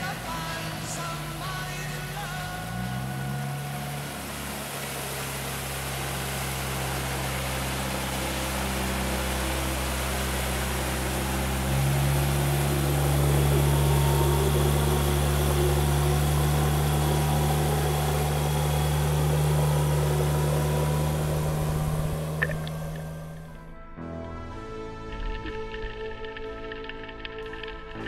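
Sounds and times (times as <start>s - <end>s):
engine humming: 0.0s - 28.0s.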